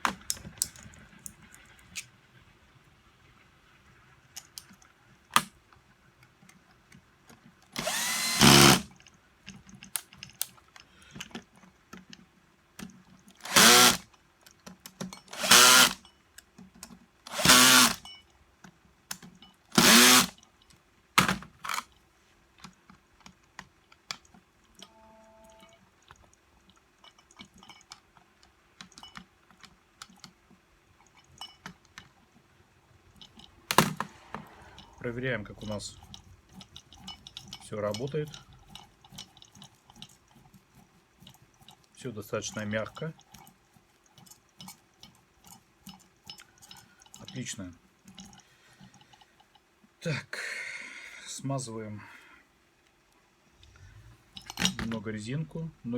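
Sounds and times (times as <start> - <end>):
electric screwdriver running: 7.8 - 8.9, 13.4 - 14.0, 15.3 - 16.0, 17.3 - 18.0, 19.8 - 20.3.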